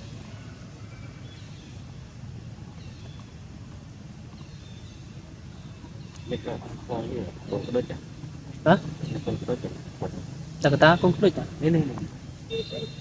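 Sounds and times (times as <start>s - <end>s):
faint high chirps: 6.2s - 13.0s.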